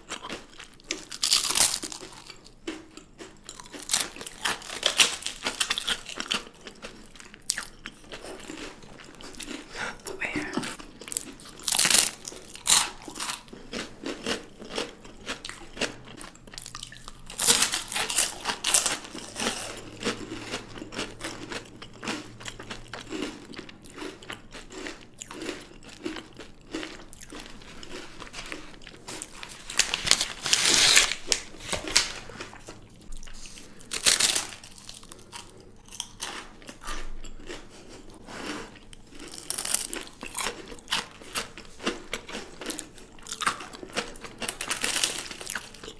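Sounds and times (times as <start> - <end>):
crunchy bites and chewing: 0.0 - 45.9.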